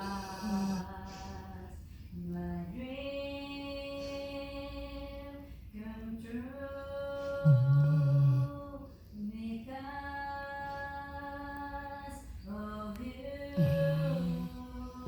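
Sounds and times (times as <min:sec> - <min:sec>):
lower louder snore: 0:00.0 - 0:01.0, 0:07.4 - 0:08.7, 0:13.6 - 0:15.0
steady sing-song snoring: 0:00.0 - 0:01.8, 0:06.6 - 0:15.0.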